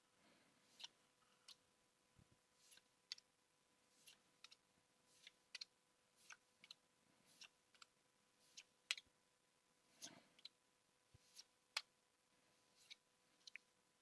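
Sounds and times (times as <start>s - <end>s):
trading cards flipped swish and click: 0.7s - 1.6s, 2.6s - 3.3s, 4.0s - 9.1s, 12.7s - 13.6s.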